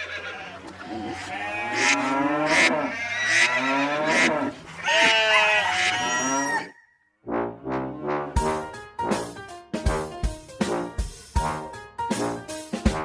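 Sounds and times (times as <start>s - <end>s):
cattle mooing: 0.3s - 6.8s
brass-led song intro: 7.2s - 13.0s.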